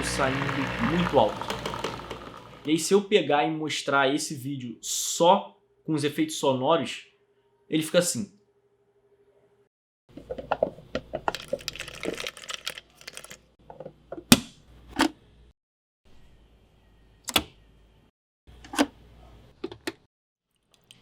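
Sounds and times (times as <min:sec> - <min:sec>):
capsules clicking and rattling: 0:11.1 - 0:13.5.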